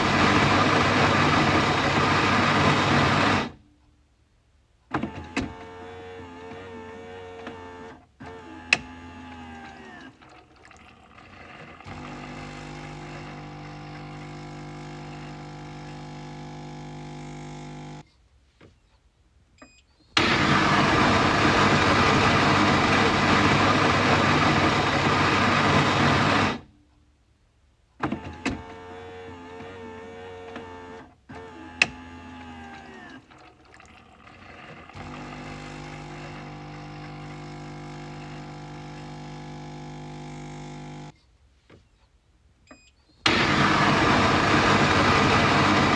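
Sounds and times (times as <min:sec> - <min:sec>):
coffee machine motor hum: 0:00.0 - 0:03.6, 0:10.9 - 0:18.0, 0:20.2 - 0:26.6, 0:31.6 - 0:41.1, 0:43.3 - 0:45.9
coffee machine rushing noise: 0:00.0 - 0:03.6, 0:20.2 - 0:26.6, 0:43.3 - 0:45.9.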